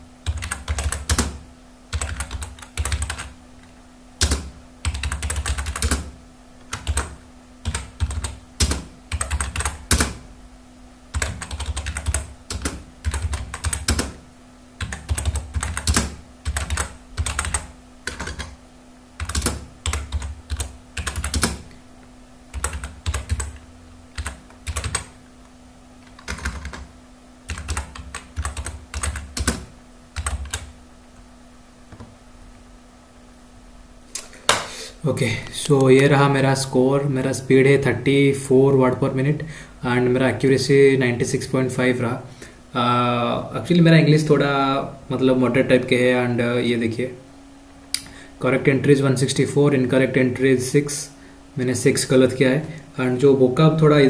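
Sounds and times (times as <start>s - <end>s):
faint steady hum: 0.0s - 54.0s
keyboard typing: 0.2s - 3.3s, 4.2s - 6.1s, 6.7s - 10.2s, 11.1s - 14.2s, 14.8s - 18.6s, 19.2s - 21.7s, 22.5s - 25.2s, 26.0s - 26.9s, 27.5s - 30.7s.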